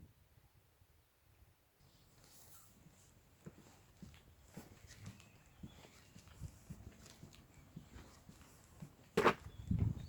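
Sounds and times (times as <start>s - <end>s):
faint footsteps: 2.0s - 10.0s.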